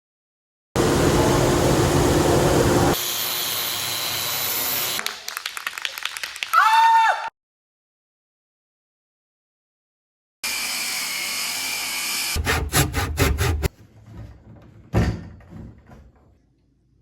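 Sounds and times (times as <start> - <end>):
loud power tool running: 0.8 - 5.0, 10.4 - 12.5.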